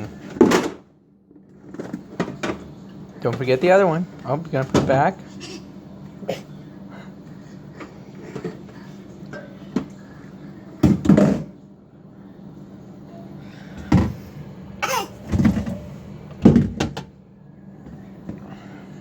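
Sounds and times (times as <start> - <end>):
knocks and clunks in fridge: 4.6 - 5.0, 10.8 - 11.6, 13.8 - 17.2.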